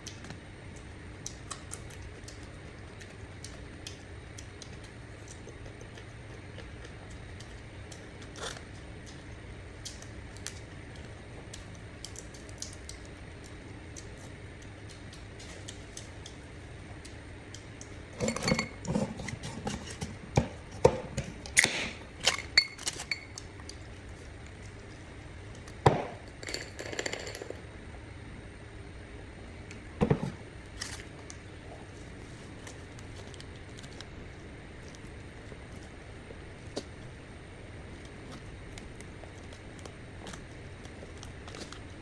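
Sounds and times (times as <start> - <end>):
dishes and utensils clinking: 18.2 - 19.1.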